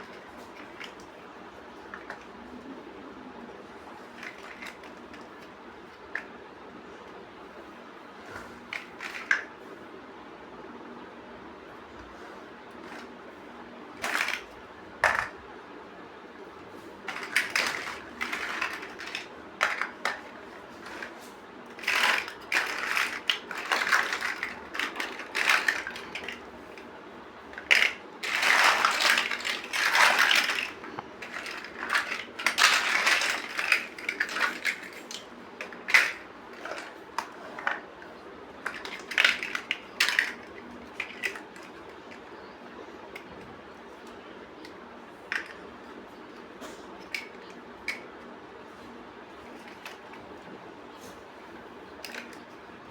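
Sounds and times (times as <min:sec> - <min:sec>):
plastic bricks rattling: 0:04.0 - 0:06.3, 0:13.9 - 0:15.4, 0:16.6 - 0:42.5, 0:45.3 - 0:46.0, 0:52.0 - 0:52.6
plastic bricks clicking together: 0:14.0 - 0:15.4, 0:17.1 - 0:26.9, 0:27.5 - 0:42.2, 0:52.0 - 0:52.6.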